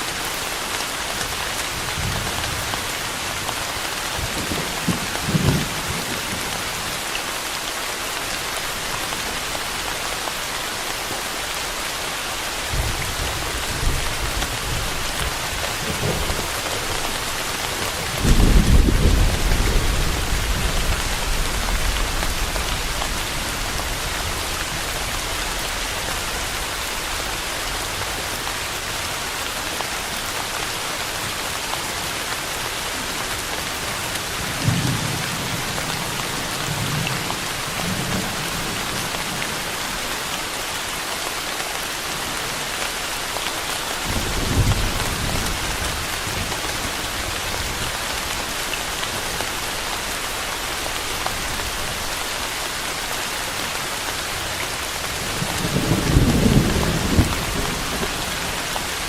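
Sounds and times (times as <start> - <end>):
steady rain falling: 0.0 - 59.0
low rumbles of thunder: 12.7 - 24.9, 55.4 - 58.7.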